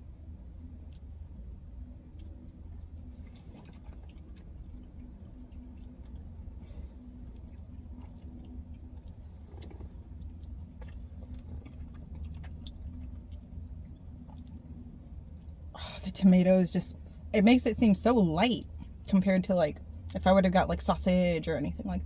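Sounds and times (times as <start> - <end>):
chewing crisp pizza: 0.0 - 16.4
steady low hum: 0.0 - 22.0.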